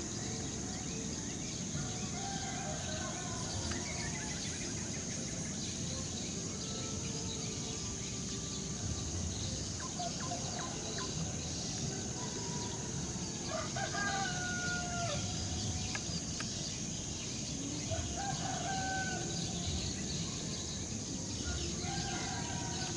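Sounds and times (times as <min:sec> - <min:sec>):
high-pitched insect drone: 0:00.0 - 0:22.9
rooster crowing: 0:12.2 - 0:15.3, 0:18.1 - 0:19.6.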